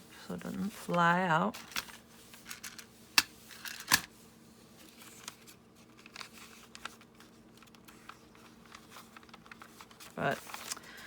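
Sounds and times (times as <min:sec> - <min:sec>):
paper rustling: 0:04.8 - 0:11.0
small ticks of pages: 0:05.1 - 0:10.9.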